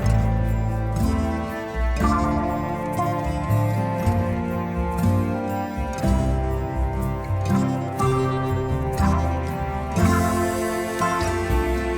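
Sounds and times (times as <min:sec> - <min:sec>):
instrumental background music: 0:00.0 - 0:11.9.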